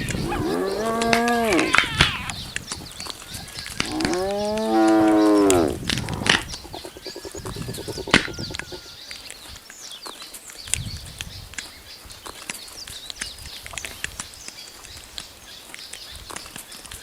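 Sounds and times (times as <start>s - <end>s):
hyena lowing call: 0.0s - 2.4s, 3.8s - 9.0s.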